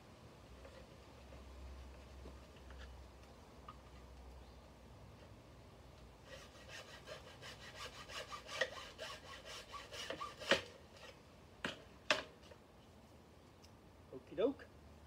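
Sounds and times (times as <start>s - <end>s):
hand saw cutting wood: 6.2s - 11.2s.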